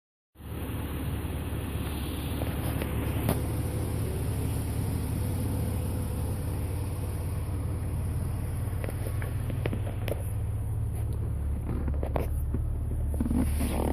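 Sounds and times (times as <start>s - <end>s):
engine droning with buzz: 0.4s - 13.9s.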